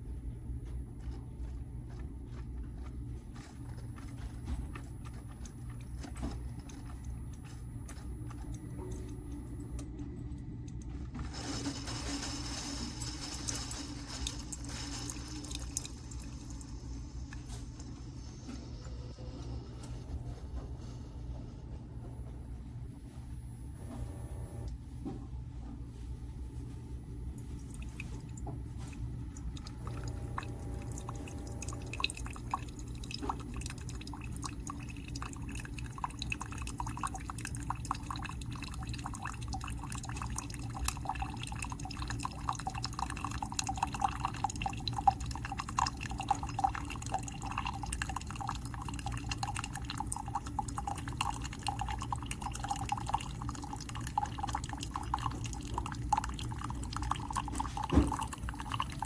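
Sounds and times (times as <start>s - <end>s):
coffee maker humming: 0.0s - 22.1s, 23.6s - 59.0s
coffee dripping into cup: 11.9s - 18.9s, 27.2s - 59.0s.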